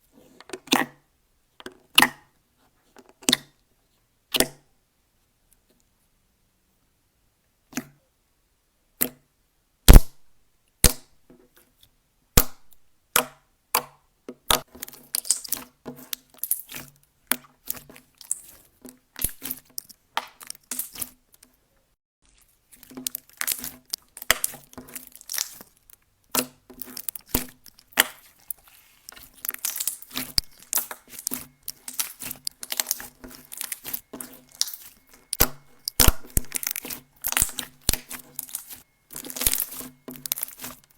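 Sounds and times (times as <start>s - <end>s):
slime popping and crackling: 9.9s - 10.1s, 14.5s - 16.8s, 17.6s - 18.6s, 19.2s - 21.5s, 22.4s - 40.9s.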